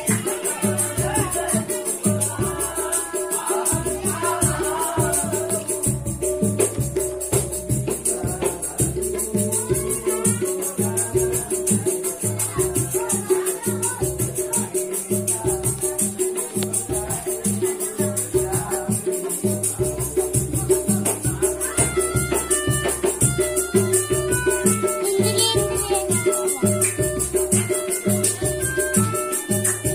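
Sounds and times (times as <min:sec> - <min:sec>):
fast hand percussion: 0:00.0 - 0:29.9
melodica playing: 0:22.0 - 0:29.9.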